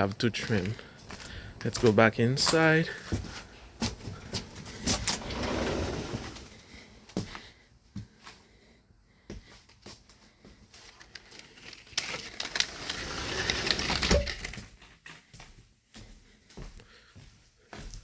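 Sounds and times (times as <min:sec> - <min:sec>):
footsteps: 0:00.0 - 0:11.6, 0:12.6 - 0:18.0
scraping rustling noise: 0:03.2 - 0:06.9, 0:10.9 - 0:14.7.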